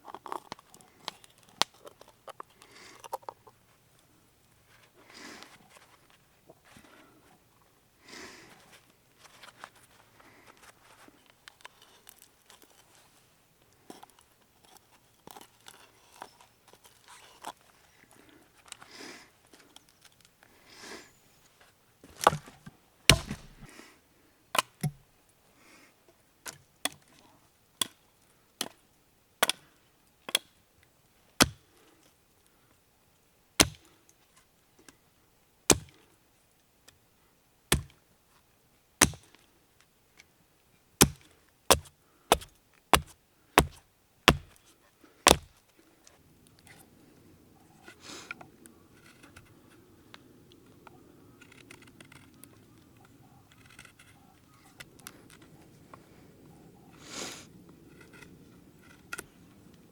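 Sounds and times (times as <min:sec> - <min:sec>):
blade chopping into wood: 0:23.1 - 0:23.7, 0:31.4 - 0:31.6, 0:33.6 - 0:33.9, 0:35.7 - 0:36.0, 0:37.7 - 0:38.0, 0:39.0 - 0:39.4, 0:41.0 - 0:44.6, 0:45.3 - 0:45.5.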